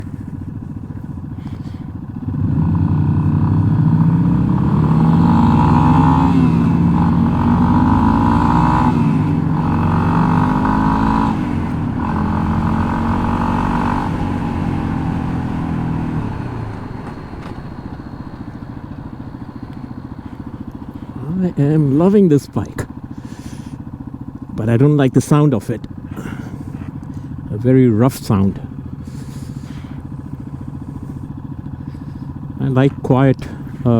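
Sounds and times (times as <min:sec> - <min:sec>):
motorcycle engine accelerating: 0:00.0 - 0:33.9
rattling: 0:04.6 - 0:23.1.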